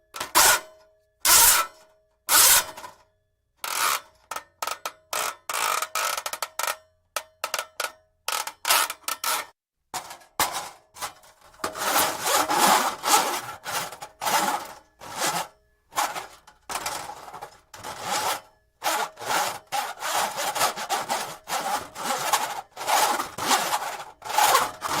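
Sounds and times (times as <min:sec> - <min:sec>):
steel cable scraping: 0:11.4 - 0:25.0.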